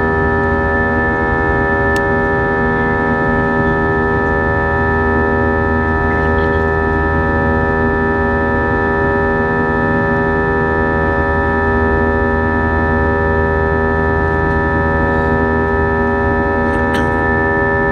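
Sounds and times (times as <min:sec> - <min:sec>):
jet engine drone in cabin: 0:00.0 - 0:17.9.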